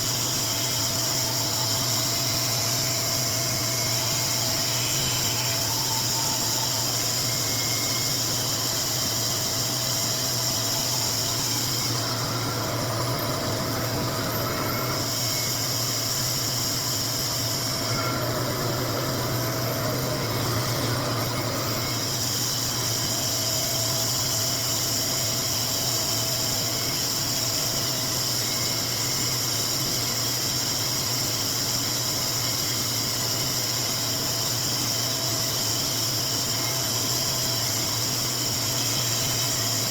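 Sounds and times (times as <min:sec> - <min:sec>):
hair dryer running: 0:00.0 - 0:29.3.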